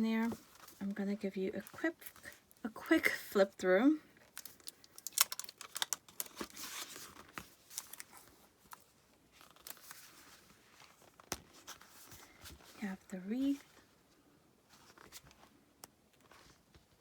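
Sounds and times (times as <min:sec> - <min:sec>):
paper pages rustling: 0:00.2 - 0:00.9, 0:04.3 - 0:12.8, 0:14.7 - 0:17.0.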